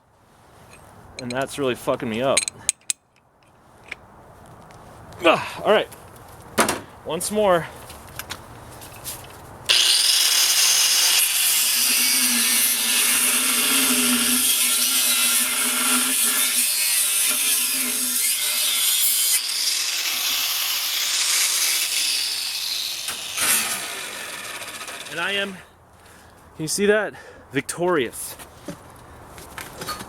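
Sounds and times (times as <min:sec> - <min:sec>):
angle grinder cutting metal: 0:09.7 - 0:25.6.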